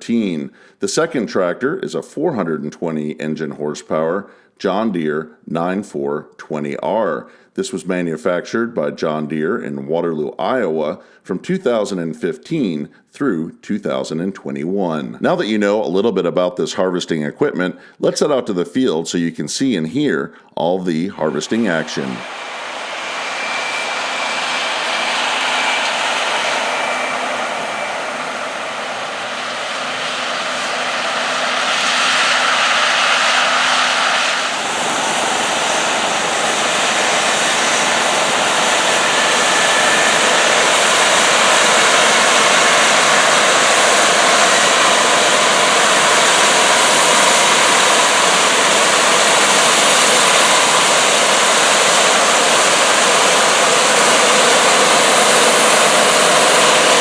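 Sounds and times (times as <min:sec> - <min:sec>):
combine harvester drone: 0:21.2 - 0:57.0.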